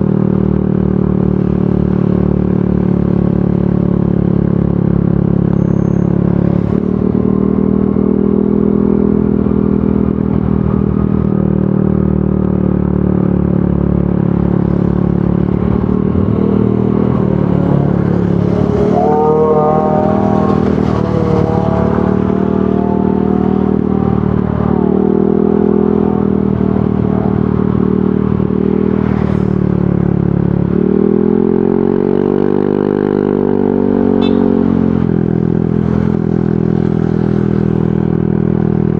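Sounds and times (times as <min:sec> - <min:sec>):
scooter engine revving: 0:14.2 - 0:29.0.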